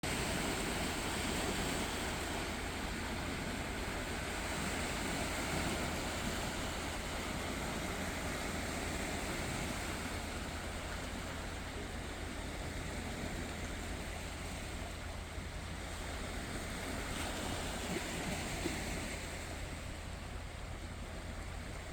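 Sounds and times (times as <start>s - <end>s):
small waves washing in: 0.0s - 21.9s.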